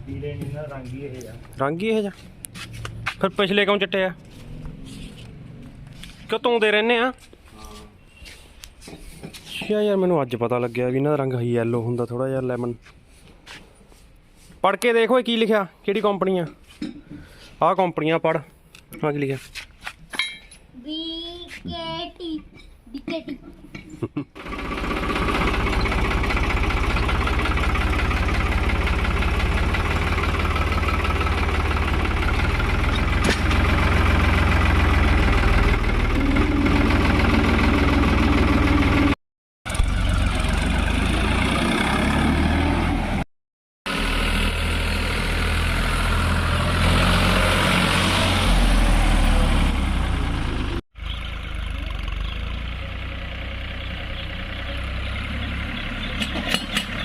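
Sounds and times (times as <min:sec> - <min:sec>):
tractor diesel engine rumbling: 0:24.4 - 0:43.2, 0:43.9 - 0:57.0.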